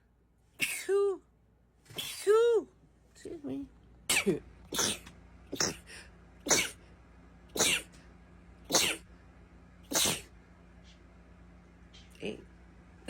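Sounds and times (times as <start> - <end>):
person sneezing: 0.6 - 1.2, 1.9 - 2.5, 4.1 - 6.8, 7.6 - 8.0, 8.7 - 9.0, 9.9 - 10.3.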